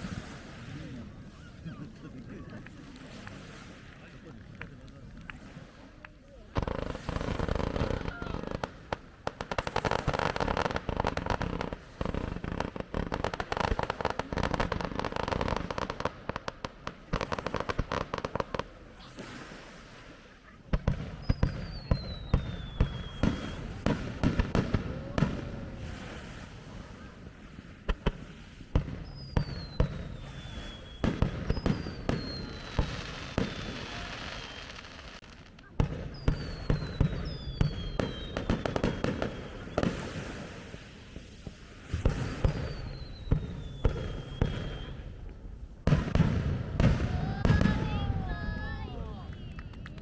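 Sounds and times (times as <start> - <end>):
fireworks crackling bursts: 0.0 - 50.0
falling firework whistles: 21.0 - 24.5, 28.2 - 35.3, 35.9 - 45.1.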